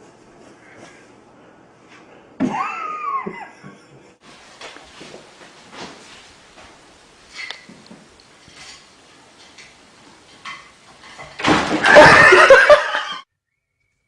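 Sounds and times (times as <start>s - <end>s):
loud clattering crash: 10.4s - 12.6s.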